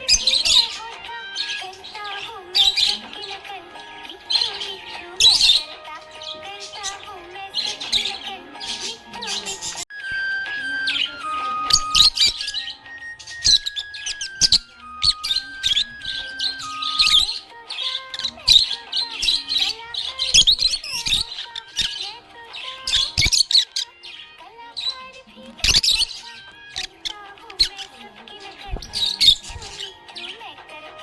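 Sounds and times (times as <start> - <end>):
budgerigar chirping: 0.0 - 9.8, 10.8 - 30.5
instrumental melody of held notes: 0.0 - 24.3.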